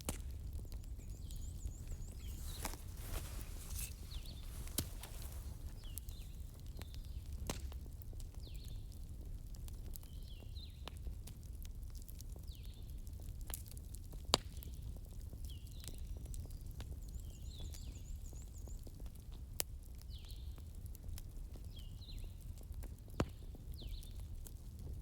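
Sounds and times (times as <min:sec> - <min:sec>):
wood fire crackling: 0:01.0 - 0:08.1.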